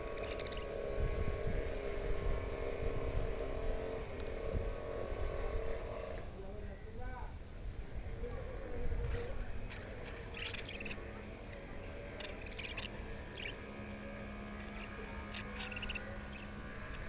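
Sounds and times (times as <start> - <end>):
budgerigars chirping: 0.0 - 0.7, 10.0 - 17.0
steady low hum: 0.0 - 17.0.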